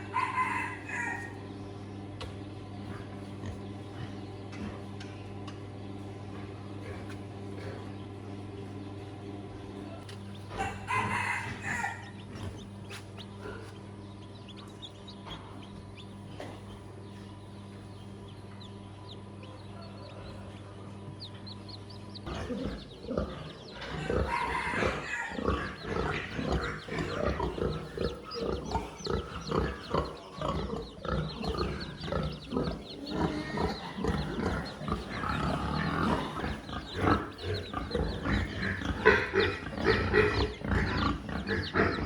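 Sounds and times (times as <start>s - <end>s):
rooster crowing: 0.0s - 1.4s, 10.5s - 12.2s, 23.7s - 30.3s
farm animals calling and clucking: 0.0s - 42.0s
steady low hum: 0.0s - 42.0s.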